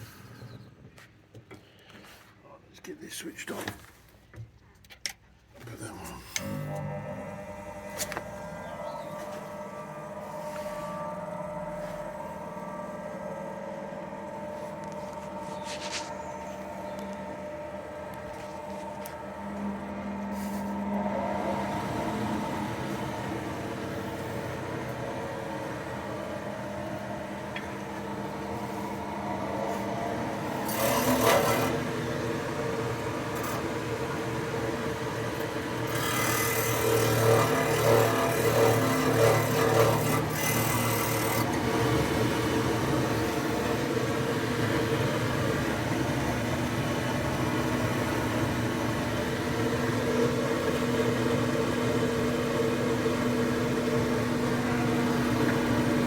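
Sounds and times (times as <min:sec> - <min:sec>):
blower fan humming: 0:05.5 - 0:56.0
rustling and scraping: 0:14.5 - 0:17.2.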